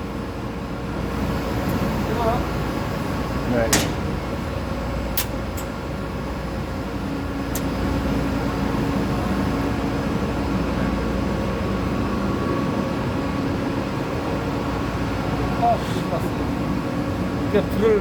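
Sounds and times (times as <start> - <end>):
industrial machine humming: 0.0 - 18.0
sharp click: 3.7 - 4.1, 5.2 - 5.7.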